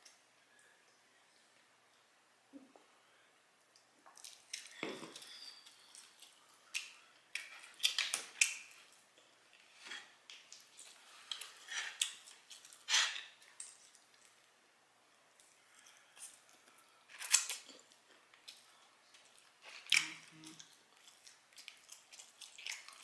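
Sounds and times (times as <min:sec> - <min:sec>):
person chewing and lip-smacking: 0:03.7 - 0:09.3, 0:10.3 - 0:14.4, 0:15.4 - 0:23.0.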